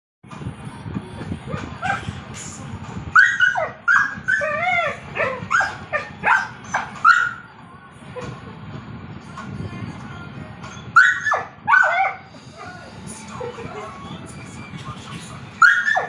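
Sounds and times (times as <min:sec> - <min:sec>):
dog whining and yipping: 0:01.5 - 0:02.1, 0:03.2 - 0:07.5, 0:10.7 - 0:12.7, 0:15.6 - 0:16.0.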